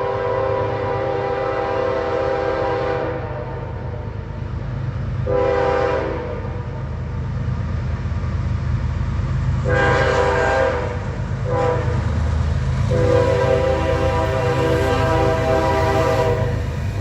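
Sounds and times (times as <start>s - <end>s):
locomotive horn blasts: 0.0s - 4.2s, 5.2s - 6.8s, 9.6s - 12.0s, 12.9s - 16.7s
train rumbling past: 0.0s - 17.0s.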